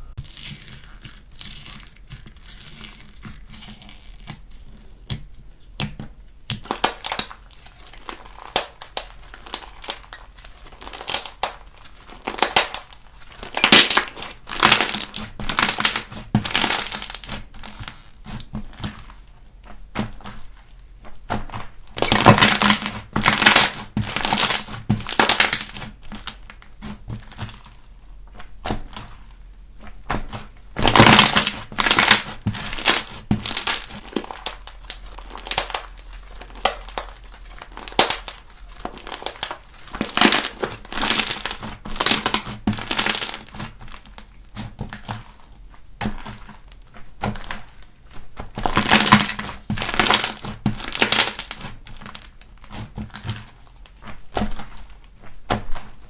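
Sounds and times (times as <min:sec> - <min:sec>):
slime crackling when squeezed: 0:06.5 - 0:18.4, 0:21.9 - 0:27.8, 0:30.8 - 0:44.7, 0:48.6 - 0:53.4.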